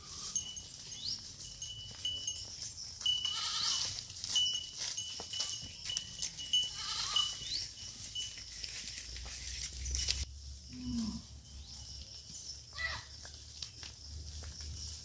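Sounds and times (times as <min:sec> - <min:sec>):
livestock bleating: 0:03.2 - 0:03.9, 0:06.7 - 0:07.4.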